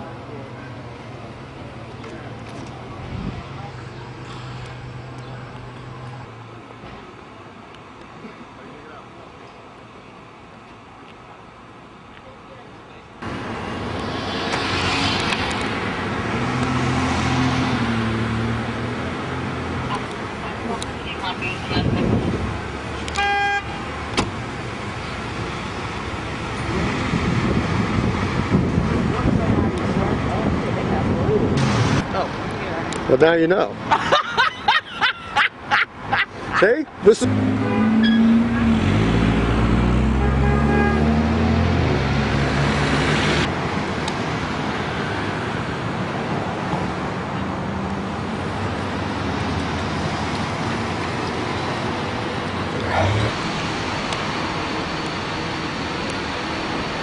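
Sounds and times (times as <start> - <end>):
road noise: 0.0 - 57.0
vehicle passing close: 13.2 - 20.8, 37.0 - 45.7
short car horn beep: 23.2 - 23.8, 37.6 - 38.4, 40.2 - 41.1.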